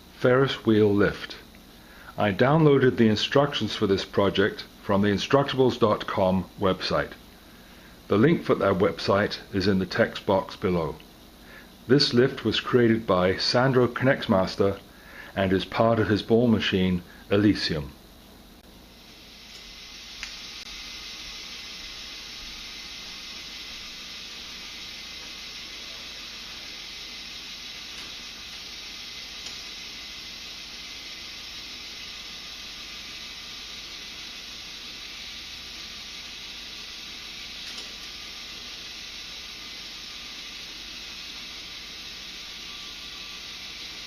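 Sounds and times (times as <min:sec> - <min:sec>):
small motor whirring: 0:19.0 - 0:44.0.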